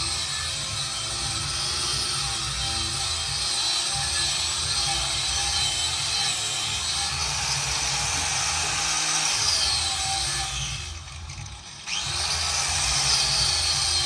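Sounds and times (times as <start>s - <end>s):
power grinder on metal pipe: 0.0s - 14.0s.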